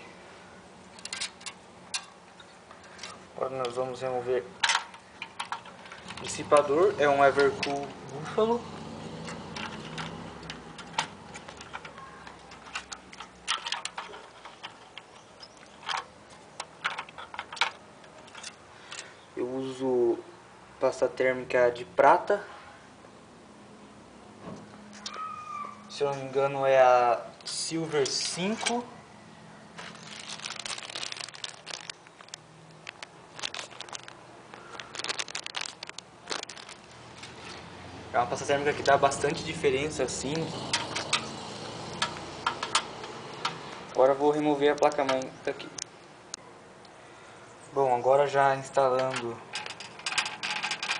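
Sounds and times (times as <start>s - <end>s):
crinkling: 0.9s - 19.2s, 29.6s - 46.4s, 48.2s - 50.9s.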